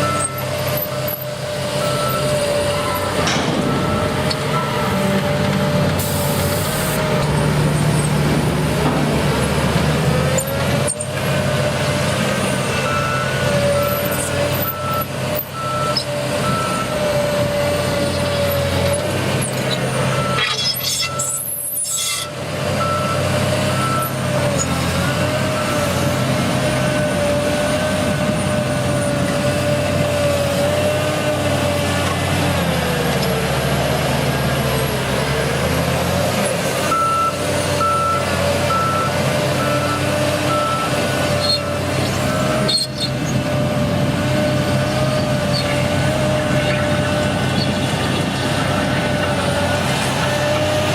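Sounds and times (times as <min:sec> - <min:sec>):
reversing alarm beeping: 0:00.0 - 0:05.0, 0:12.8 - 0:17.0, 0:20.1 - 0:24.2, 0:36.9 - 0:42.9
heavy machine engine running: 0:00.0 - 0:50.9.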